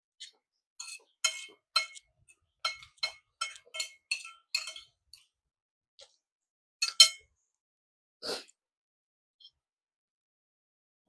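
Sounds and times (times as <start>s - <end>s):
cutlery clinking against a dish: 0.8s - 5.0s, 6.8s - 7.3s.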